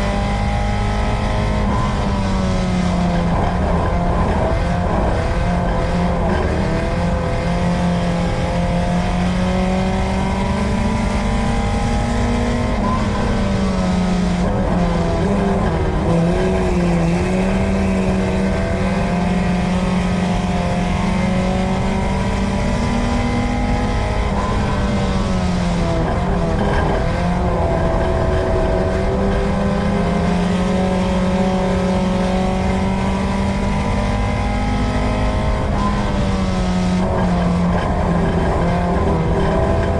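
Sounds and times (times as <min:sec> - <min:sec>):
race car engine revving: 0:00.0 - 0:39.9
road and wind noise: 0:00.0 - 0:39.9.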